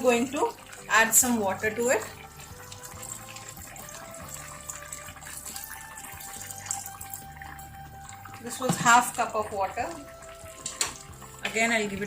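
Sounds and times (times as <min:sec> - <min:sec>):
water pouring into a pan: 0:00.0 - 0:12.0.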